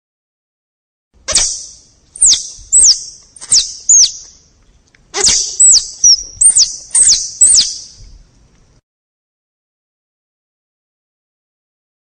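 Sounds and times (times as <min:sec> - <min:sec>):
squirrel chirping: 0:01.3 - 0:04.4, 0:05.2 - 0:08.0.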